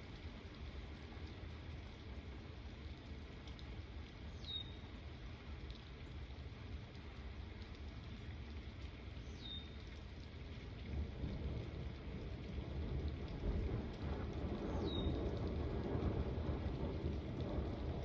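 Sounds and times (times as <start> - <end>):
steady rain: 0.0 - 18.0
thunder rumbling: 11.2 - 18.0.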